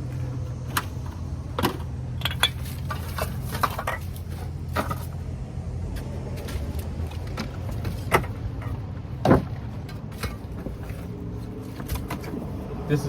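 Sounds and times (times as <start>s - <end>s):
steady low hum: 0.0s - 12.9s
metal items clinking: 0.6s - 5.2s.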